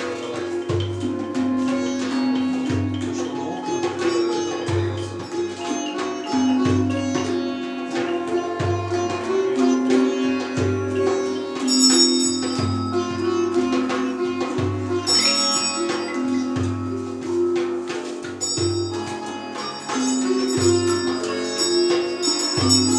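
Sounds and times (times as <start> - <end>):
deep drum beat: 0.0 - 22.9
sitar melody: 0.0 - 22.9
bright chiming: 11.1 - 22.9.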